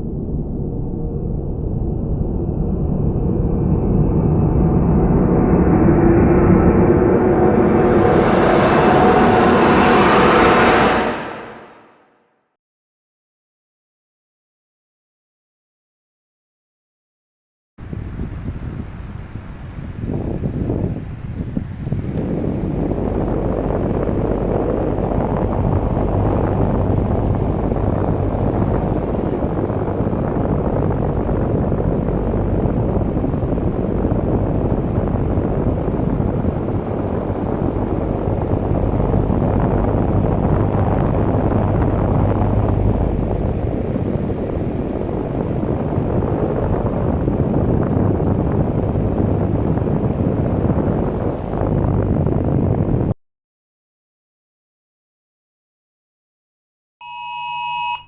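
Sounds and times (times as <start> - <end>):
loud steady rumbling: 0.0 - 12.0, 21.8 - 53.1.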